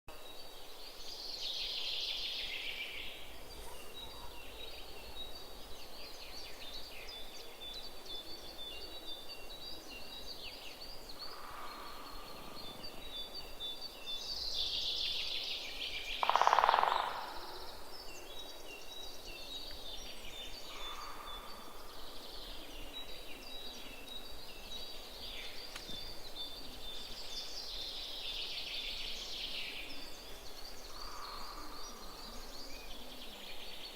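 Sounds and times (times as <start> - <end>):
songbirds chirping and singing: 0.1 - 33.9
lower bird calls: 10.8 - 13.9, 15.8 - 18.9, 25.2 - 33.9.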